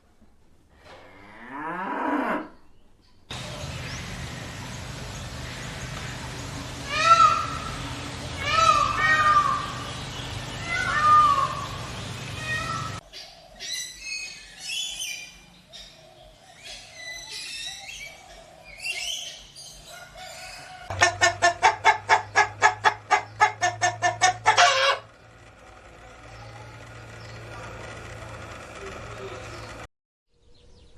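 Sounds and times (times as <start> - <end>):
chickens clucking: 19.8 - 25.3.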